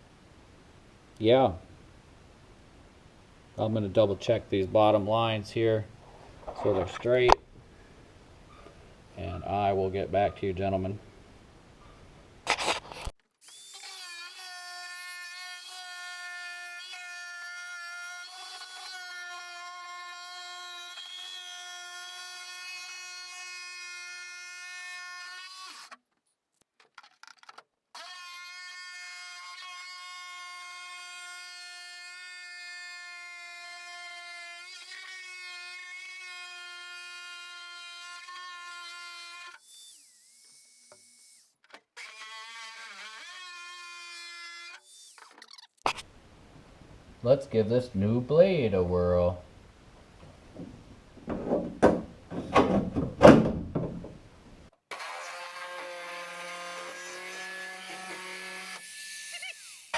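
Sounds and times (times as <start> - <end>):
power tool whining: 39.2 - 43.9, 44.6 - 45.8, 54.9 - 59.9.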